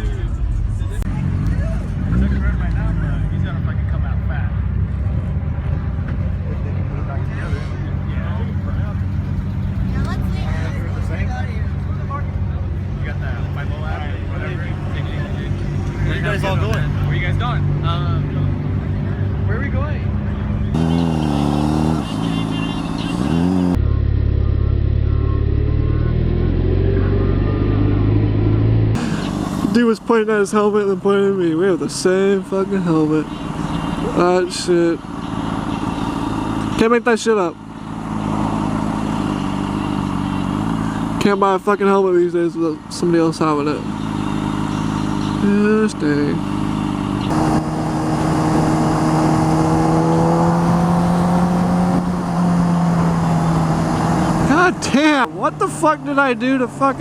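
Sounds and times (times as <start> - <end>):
motorcycle engine running: 0.0 - 29.5, 31.2 - 57.0
motorcycle engine pulling away: 43.8 - 56.9.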